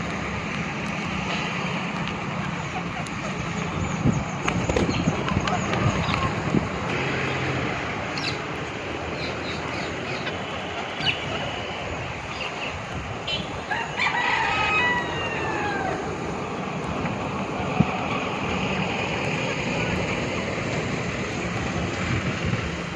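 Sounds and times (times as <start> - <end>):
birds chirping: 0.0 - 21.8.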